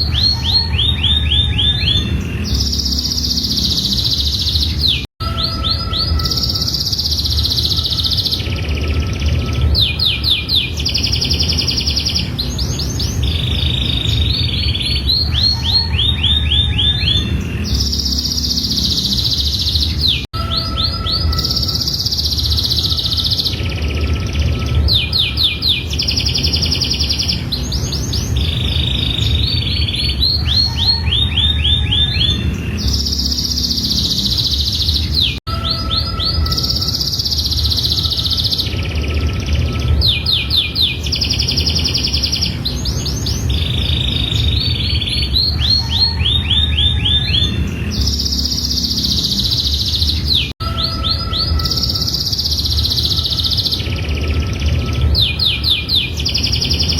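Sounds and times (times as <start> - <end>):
steady low hum: 0.0 - 5.1, 5.8 - 20.3, 20.9 - 35.4
canary singing trills: 0.0 - 56.9.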